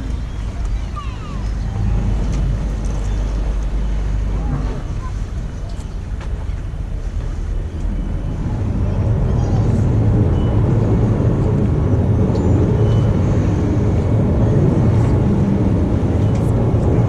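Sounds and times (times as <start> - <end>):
ferry engine rumbling: 0.0 - 17.0.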